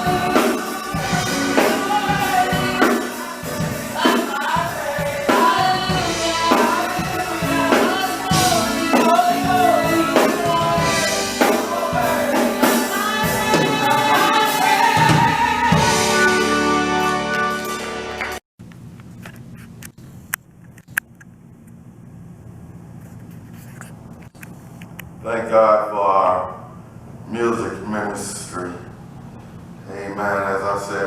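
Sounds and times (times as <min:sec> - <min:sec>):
group singing gospel: 0:00.0 - 0:18.4
steady drum beat: 0:00.0 - 0:18.4.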